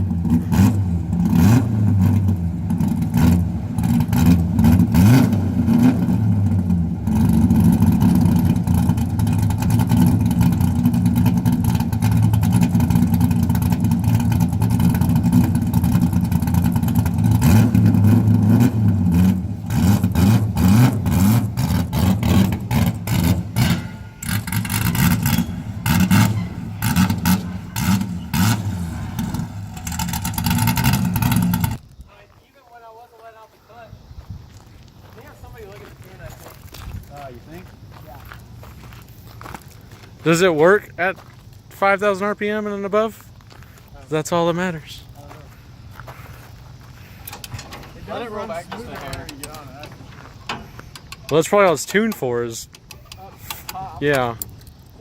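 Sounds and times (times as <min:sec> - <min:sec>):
car engine revving: 0:00.0 - 0:31.8.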